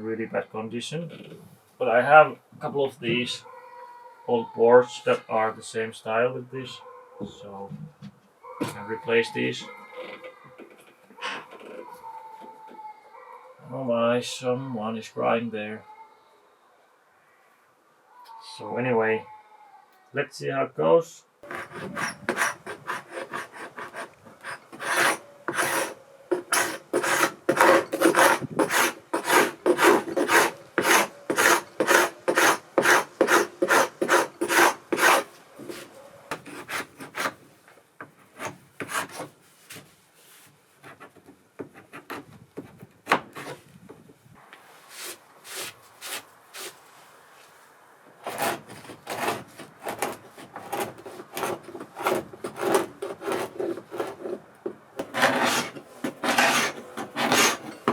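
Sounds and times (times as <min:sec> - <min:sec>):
hand tool scraping wood: 0:21.4 - 0:37.4, 0:38.2 - 0:39.8, 0:40.8 - 0:43.6, 0:44.9 - 0:46.8, 0:48.2 - 0:57.9.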